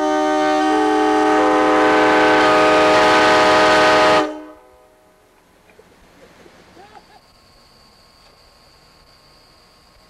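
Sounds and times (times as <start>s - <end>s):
loud air horn chord: 0.0s - 5.0s.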